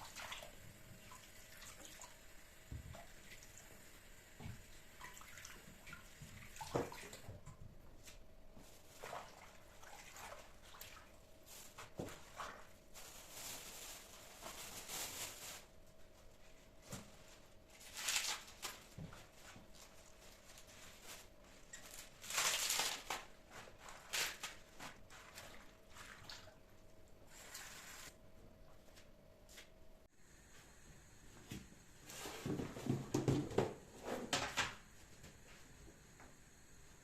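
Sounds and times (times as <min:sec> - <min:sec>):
faint steady hum: 0:00.0 - 0:37.0.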